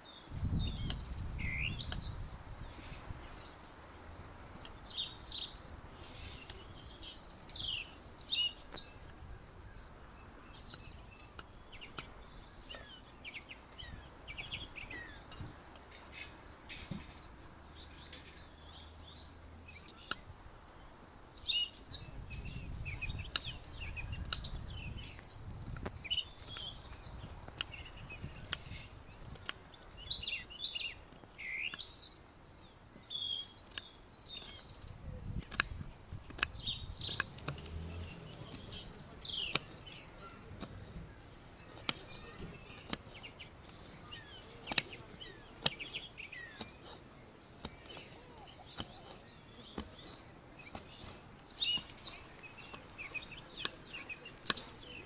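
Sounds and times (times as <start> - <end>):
small birds chirping: 0.0 - 55.0
sharp clicks: 23.0 - 30.4, 33.0 - 55.0.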